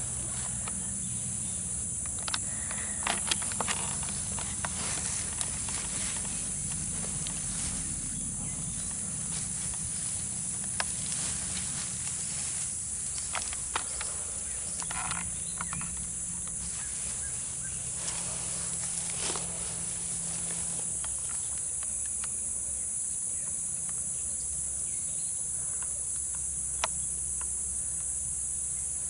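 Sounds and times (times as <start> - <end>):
insects chorus buzzing: 0.0 - 29.0
faint clicks and rustles: 0.1 - 24.1.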